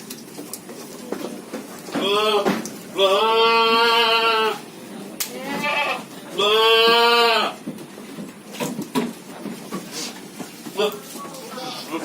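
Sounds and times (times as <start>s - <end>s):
goat bleating: 2.0s - 7.6s, 10.7s - 12.0s.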